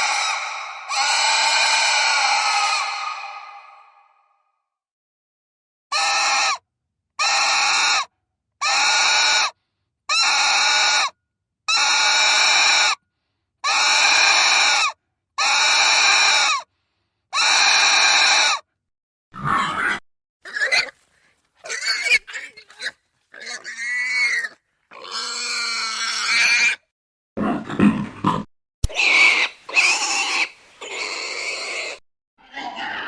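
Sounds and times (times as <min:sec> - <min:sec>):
pig squealing: 0:00.0 - 0:04.3, 0:05.9 - 0:06.6, 0:07.2 - 0:11.1, 0:11.7 - 0:13.0, 0:13.6 - 0:16.7, 0:17.4 - 0:18.6, 0:19.4 - 0:21.0, 0:21.6 - 0:26.9, 0:28.4 - 0:33.0.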